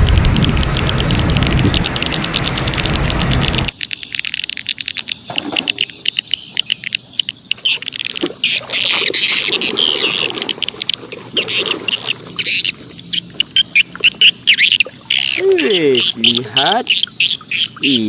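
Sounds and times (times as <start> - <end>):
steady rushing noise: 0.0 - 3.8
insects chirping: 0.0 - 18.0
birds calling: 0.7 - 18.0.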